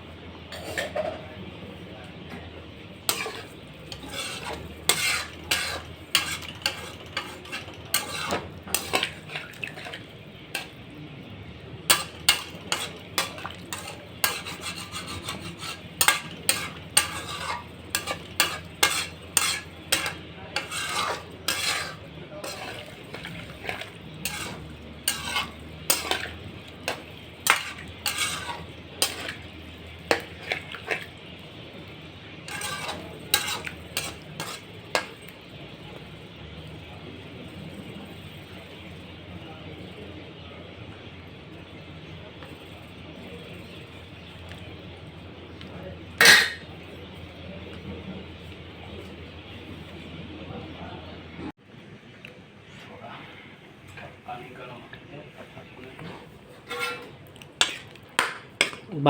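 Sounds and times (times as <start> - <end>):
metal spoon scraping pan: 0.5 - 1.2, 3.0 - 10.8, 11.9 - 31.3, 32.0 - 35.4, 46.2 - 46.7, 56.0 - 58.9
food sizzling: 3.0 - 39.3, 56.4 - 59.0.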